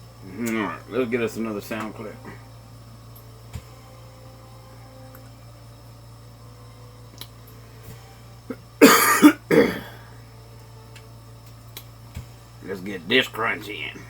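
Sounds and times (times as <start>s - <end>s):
man coughing: 8.8s - 10.0s.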